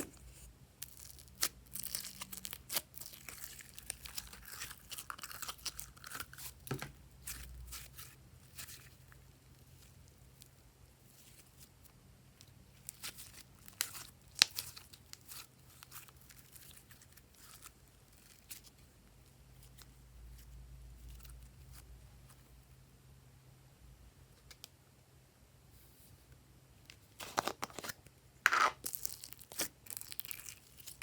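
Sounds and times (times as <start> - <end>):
slime crackling and popping: 0.8 - 10.5, 12.7 - 18.7, 28.5 - 31.0.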